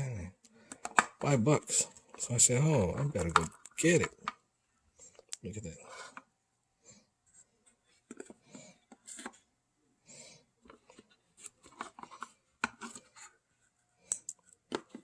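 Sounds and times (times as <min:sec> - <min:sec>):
small objects clicking and tapping: 0:14.0 - 0:15.0.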